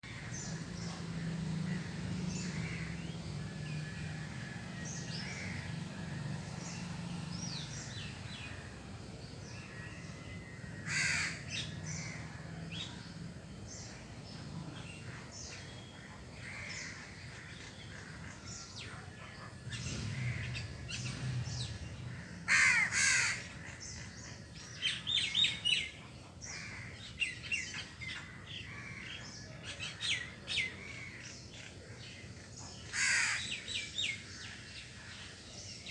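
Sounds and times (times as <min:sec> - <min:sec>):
small birds chirping: 0:00.0 - 0:35.9
crow cawing: 0:10.6 - 0:12.3, 0:22.1 - 0:23.8, 0:28.2 - 0:29.2, 0:32.9 - 0:33.6.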